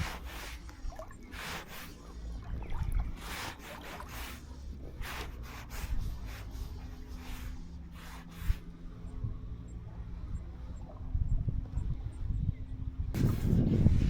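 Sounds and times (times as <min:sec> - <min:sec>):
short rustling swishes: 0:00.0 - 0:08.8, 0:13.2 - 0:14.0.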